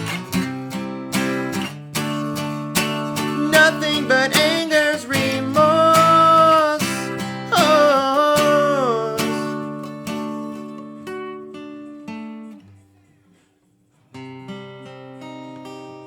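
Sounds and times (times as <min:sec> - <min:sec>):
acoustic guitar: 0:00.0 - 0:16.0
person singing: 0:03.0 - 0:11.0.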